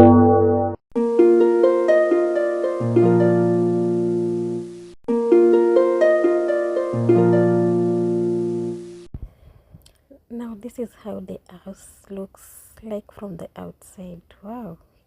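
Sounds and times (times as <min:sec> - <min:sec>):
held bass note: 0:00.0 - 0:00.8
plucked harp-like notes: 0:00.0 - 0:09.0.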